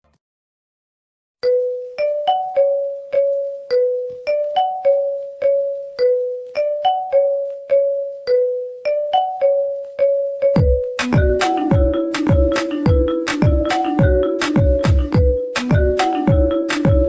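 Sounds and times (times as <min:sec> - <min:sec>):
bell-like ringtone melody: 0:01.4 - 0:17.0
deep bass beat: 0:10.6 - 0:17.0.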